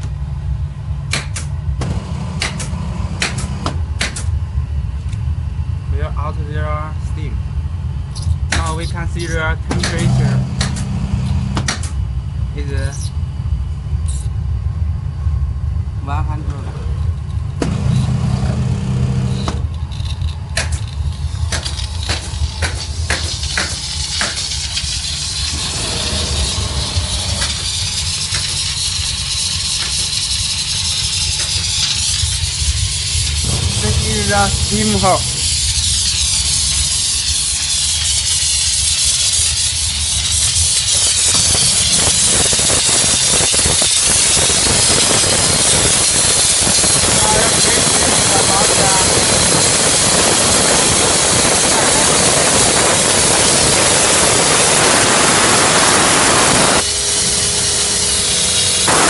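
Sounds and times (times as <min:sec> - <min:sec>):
machine low hum: 0:00.0 - 0:59.0.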